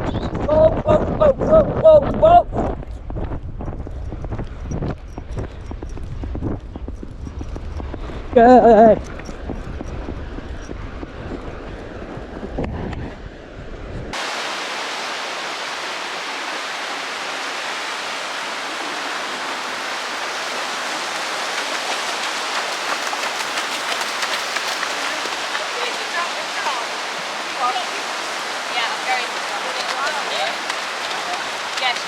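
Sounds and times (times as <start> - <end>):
water rushing on beach: 14.1 - 32.0.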